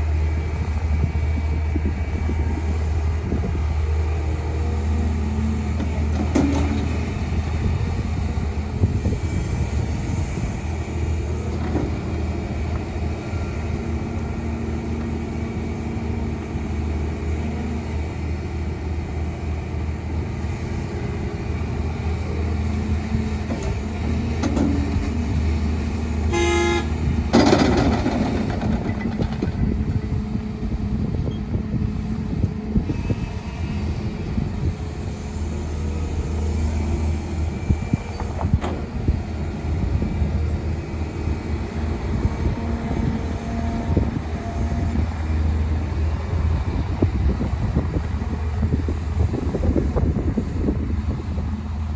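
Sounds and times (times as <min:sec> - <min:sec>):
heavy diesel engines running: 0:00.0 - 0:51.9
vehicle horn toot: 0:26.3 - 0:27.0.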